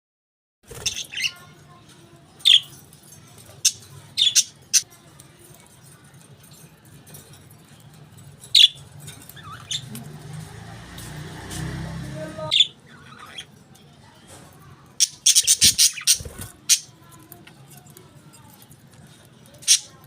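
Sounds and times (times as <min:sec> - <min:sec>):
budgerigars chirping: 0:15.0 - 0:16.9.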